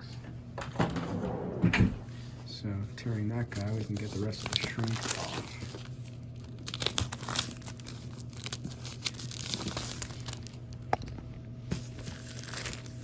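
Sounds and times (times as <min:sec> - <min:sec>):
plastic shrink wrap crinkling: 0:03.2 - 0:13.0.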